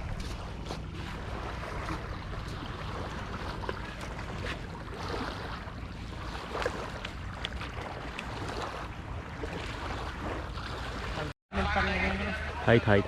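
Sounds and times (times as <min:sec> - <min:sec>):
wind rumble on microphone: 0:00.0 - 0:11.2
wind: 0:00.0 - 0:13.0.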